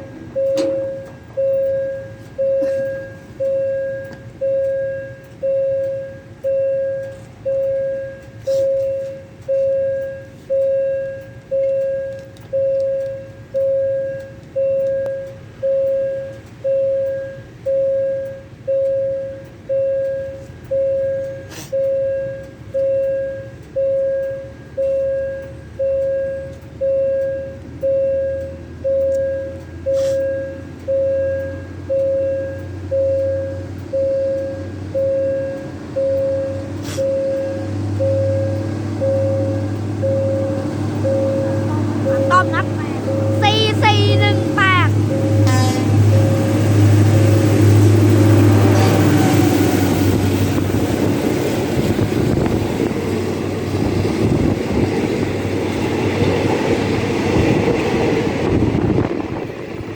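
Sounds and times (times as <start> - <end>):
level crossing bell ringing: 0.0 - 29.5, 30.3 - 46.5.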